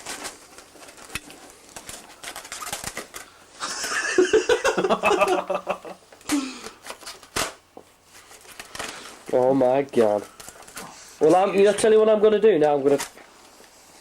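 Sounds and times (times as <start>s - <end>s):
laughter: 3.6s - 6.0s.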